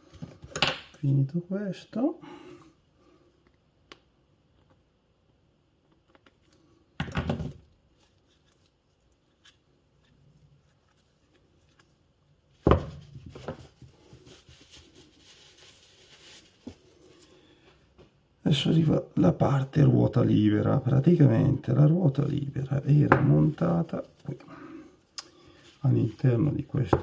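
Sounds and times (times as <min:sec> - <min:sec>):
rustling: 0:07.8 - 0:18.1.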